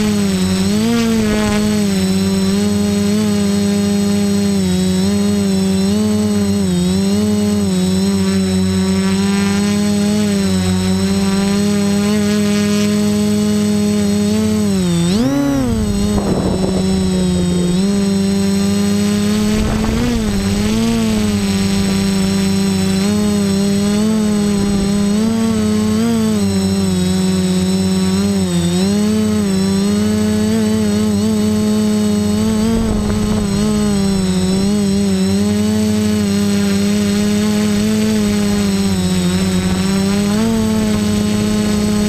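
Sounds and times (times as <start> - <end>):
quadcopter motors droning: 0.0 - 42.0.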